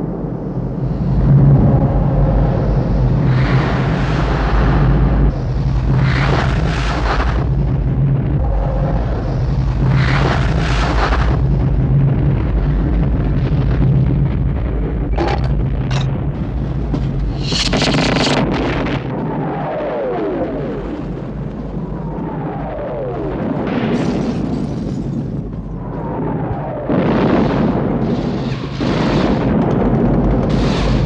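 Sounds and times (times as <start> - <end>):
heavy rumble: 0.0 - 31.0
explosions: 1.4 - 31.0
sharp cracks: 17.2 - 19.2.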